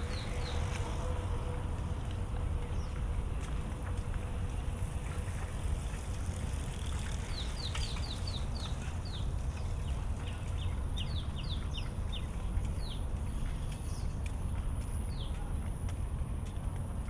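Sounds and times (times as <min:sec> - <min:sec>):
small birds chirping: 0:00.0 - 0:01.2, 0:07.0 - 0:14.3.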